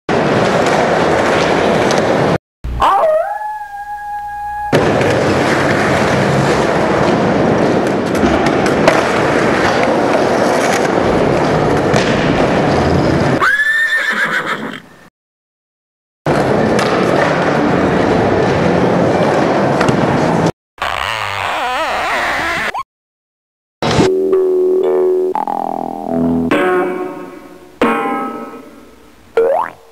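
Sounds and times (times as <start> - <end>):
skateboard wheels rolling: 0.1 - 2.4, 4.7 - 13.4, 16.3 - 20.5.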